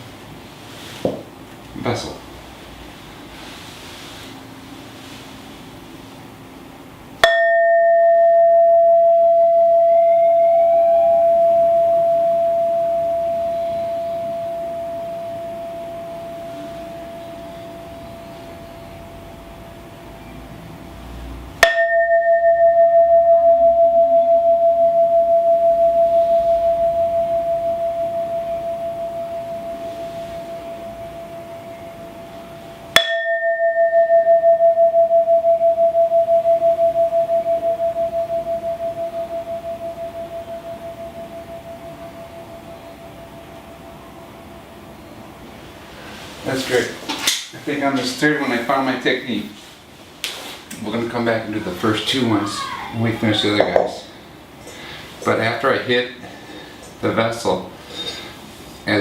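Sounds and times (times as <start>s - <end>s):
struck vessel ringing: 7.2s - 19.0s, 21.6s - 43.8s.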